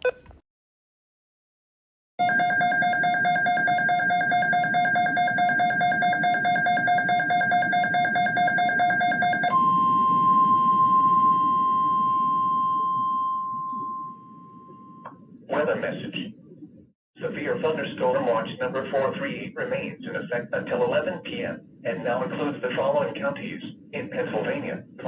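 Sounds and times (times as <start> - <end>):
steady alarm tone: 2.2 - 15.1
electronic alarm warbling: 2.2 - 15.4.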